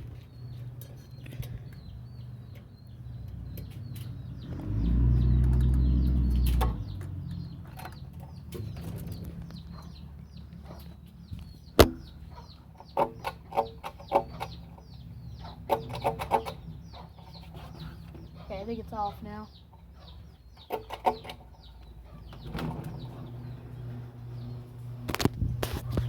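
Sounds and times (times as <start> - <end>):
loud low hum: 0.0 - 12.6
chickens clucking: 0.0 - 26.0.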